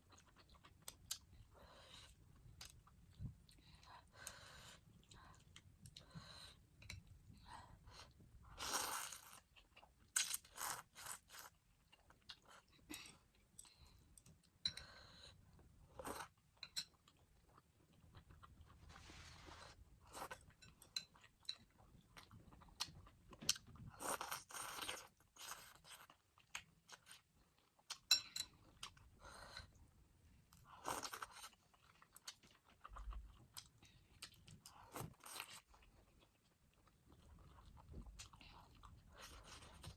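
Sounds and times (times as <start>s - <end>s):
chewing and crunching: 30.6s - 39.9s.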